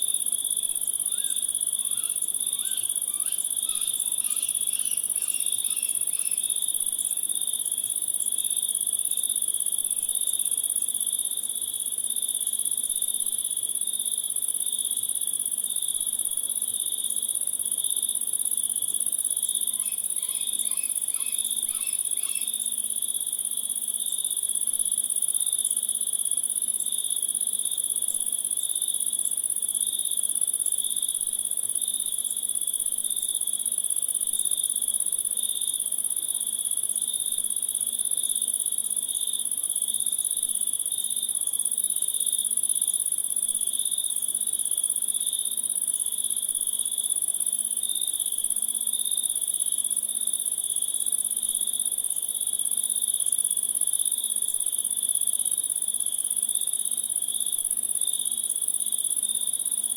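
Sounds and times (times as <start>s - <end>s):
high shrill insect chorus: 0.5s - 7.6s, 19.4s - 23.3s
pulsing insect trill: 1.0s - 6.6s, 19.7s - 22.7s.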